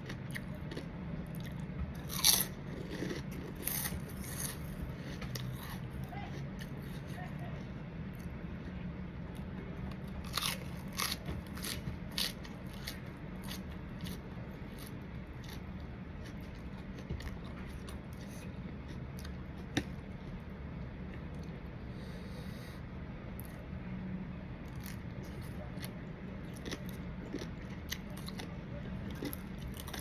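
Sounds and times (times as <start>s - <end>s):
chewing and mouth sounds: 0.0s - 7.2s, 9.3s - 20.2s, 24.6s - 30.0s
crisp crunching of food: 0.0s - 7.2s, 9.3s - 20.2s, 24.7s - 30.0s
steady low hum: 0.0s - 30.0s.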